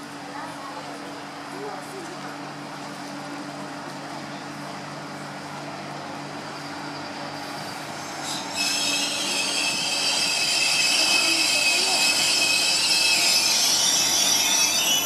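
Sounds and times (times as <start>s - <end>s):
train running with low hum: 0.0s - 15.0s
high-pitched wheel squeal: 6.6s - 15.0s.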